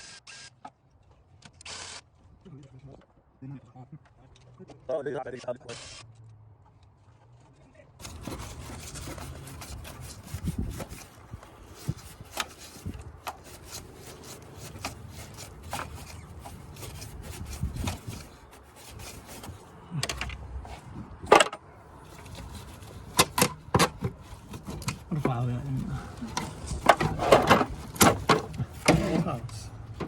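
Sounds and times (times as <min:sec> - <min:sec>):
rubbing and scraping: 0:06.9 - 0:30.0.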